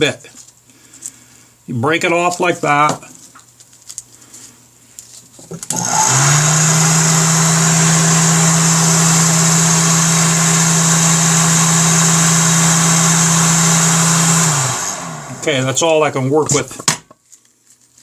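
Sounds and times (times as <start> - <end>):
heat gun motor hum: 5.7 - 15.8
rush of hot air: 5.8 - 15.7.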